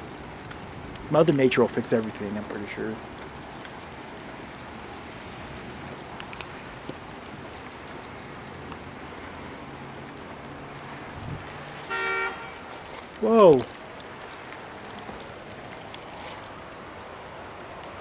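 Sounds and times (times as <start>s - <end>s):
steady rain falling: 0.0s - 18.0s
drop ticks: 6.2s - 7.4s.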